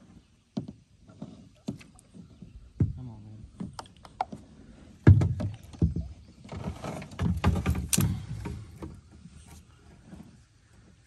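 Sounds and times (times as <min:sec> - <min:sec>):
paddle knocking kayak hull: 0:01.6 - 0:09.2
rustling and clatter: 0:05.2 - 0:10.6.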